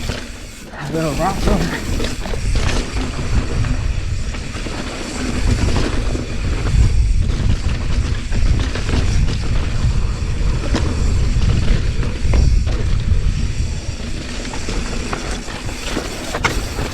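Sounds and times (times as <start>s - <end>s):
bike rattling and clicking: 0.0s - 16.9s
wind on microphone: 0.0s - 16.9s
tyres rolling over rock: 15.5s - 16.9s.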